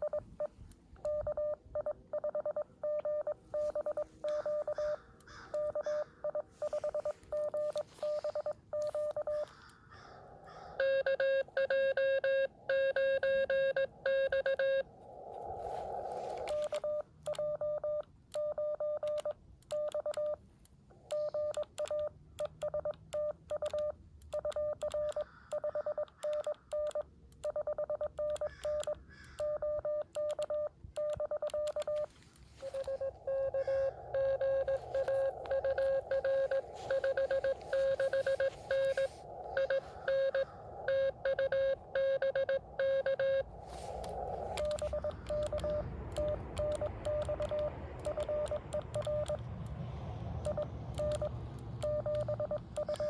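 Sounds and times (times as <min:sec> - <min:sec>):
morse code tones: 0:00.0 - 0:09.5, 0:10.8 - 0:20.4, 0:21.1 - 0:49.8, 0:50.4 - 0:53.0
radio band hiss: 0:15.0 - 0:16.8, 0:32.1 - 0:42.1, 0:43.4 - 0:46.5.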